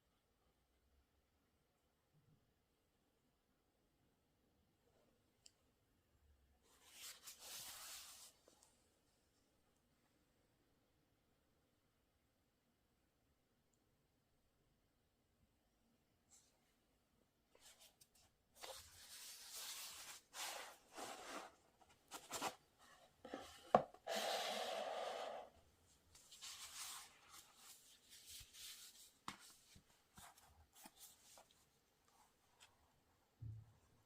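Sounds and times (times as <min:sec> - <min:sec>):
card and paper rustling: 0:17.6 - 0:24.5, 0:26.2 - 0:31.7.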